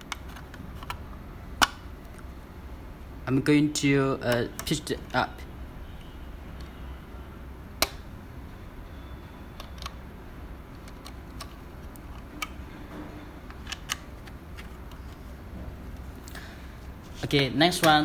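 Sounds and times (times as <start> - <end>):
plastic parts clicking and tapping: 0.0 - 1.0, 9.6 - 10.0, 10.7 - 12.7, 13.4 - 15.2.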